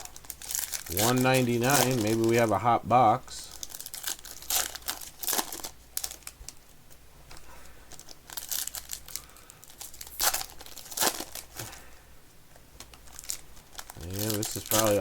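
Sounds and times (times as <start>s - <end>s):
plastic ripping: 0.0s - 2.6s, 3.5s - 6.6s, 7.9s - 11.8s, 12.8s - 15.0s
plastic wrapping crinkling: 0.0s - 11.9s, 12.8s - 15.0s.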